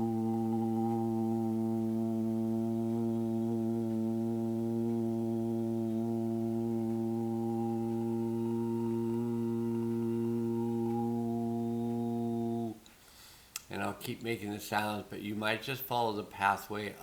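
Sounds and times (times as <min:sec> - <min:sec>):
man's low vocal drone: 0:00.0 - 0:12.8.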